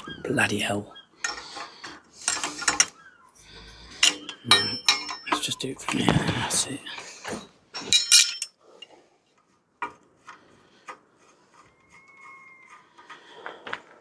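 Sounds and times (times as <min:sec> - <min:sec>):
metal scraping: 0:01.2 - 0:08.5
metal clinks: 0:04.0 - 0:06.0, 0:07.8 - 0:08.6
faint thin squeak: 0:11.5 - 0:13.6.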